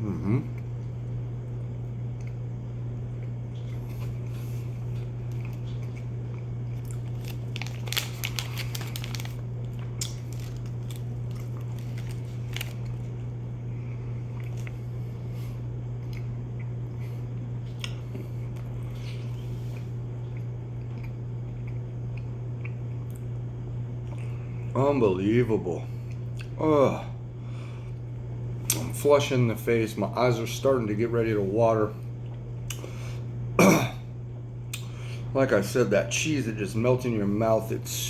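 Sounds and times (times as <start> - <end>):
steady low hum: 0.0 - 38.0
person chewing with mouth smacks: 3.1 - 13.3, 17.7 - 23.3.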